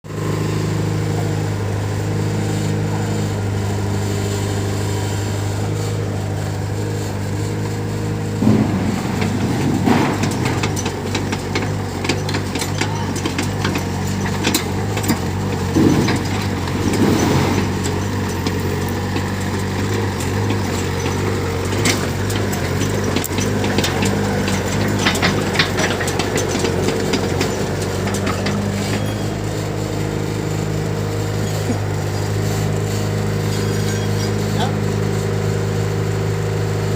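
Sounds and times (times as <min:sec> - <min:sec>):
engine humming steadily: 0:00.0 - 0:36.9
knocks and clatter: 0:08.3 - 0:30.2.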